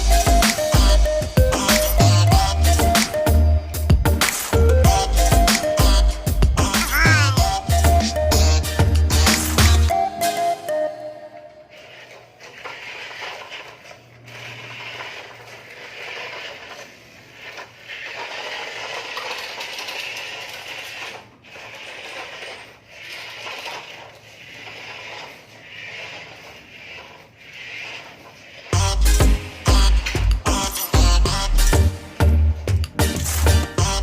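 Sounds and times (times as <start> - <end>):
small electric motors and gears: 11.6 - 31.8
mechanical ratcheting clatter: 11.7 - 25.3.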